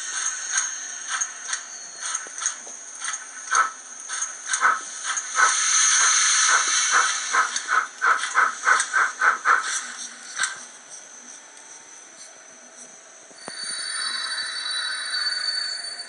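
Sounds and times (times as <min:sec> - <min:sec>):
model locomotive exhaust chuffs: 0:00.0 - 0:10.6
loud steam hiss: 0:03.0 - 0:10.2.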